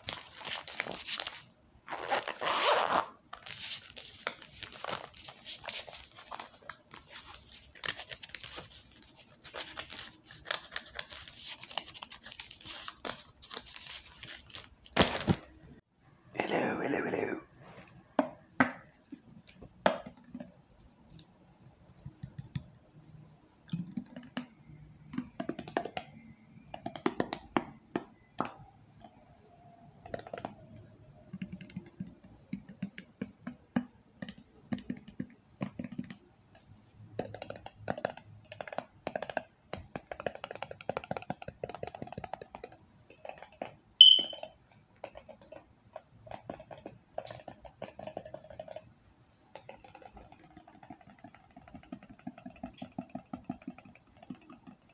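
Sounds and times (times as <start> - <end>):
sharp ringing tap: 44.0 - 44.4.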